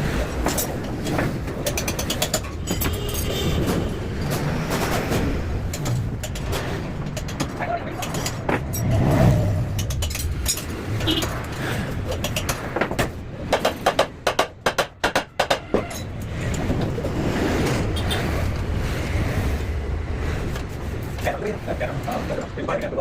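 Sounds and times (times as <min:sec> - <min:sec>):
low vehicle rumble: 0:02.5 - 0:13.5
sharp knocks: 0:09.7 - 0:15.9.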